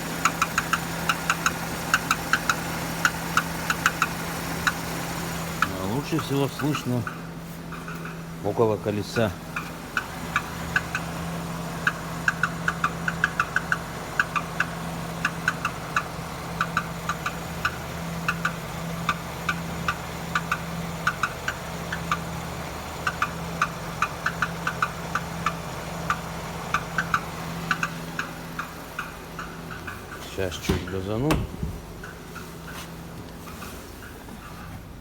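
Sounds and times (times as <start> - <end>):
car engine idling: 0.0 - 35.0
metallic ticks and knocks: 11.8 - 22.2, 23.0 - 32.8.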